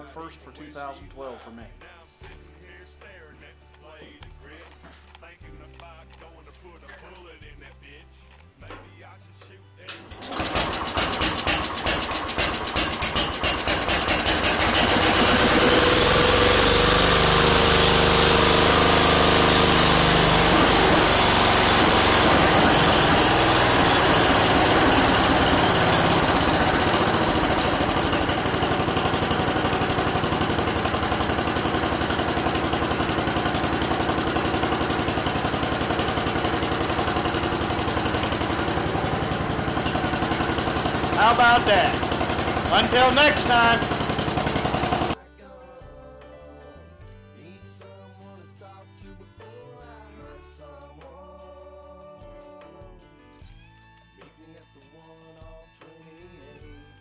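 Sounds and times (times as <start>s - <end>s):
lawn tractor engine running: 9.9s - 45.2s.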